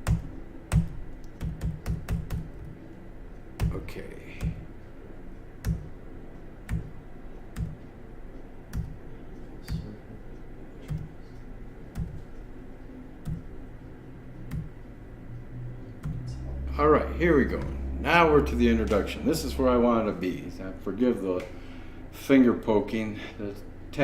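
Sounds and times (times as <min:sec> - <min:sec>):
finger tapping computer controls: 0:00.0 - 0:02.8, 0:03.4 - 0:04.7, 0:05.5 - 0:12.6, 0:13.2 - 0:13.7, 0:14.4 - 0:16.4, 0:17.4 - 0:19.4.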